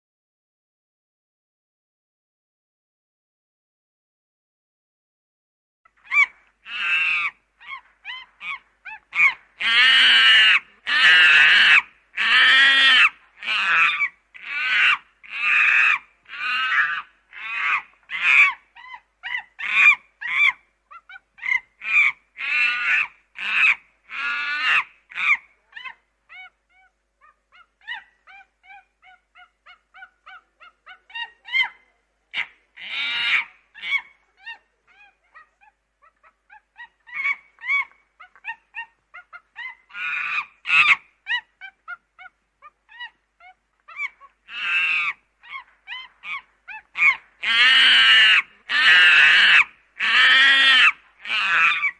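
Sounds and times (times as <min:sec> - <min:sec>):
monkey calling and screeching: 0:06.0 - 0:26.9, 0:32.4 - 0:51.9.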